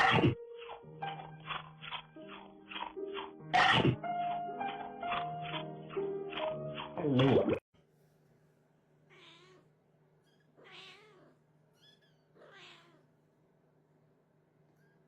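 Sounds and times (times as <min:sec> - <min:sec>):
cat meowing: 0:09.1 - 0:09.7, 0:10.3 - 0:13.1.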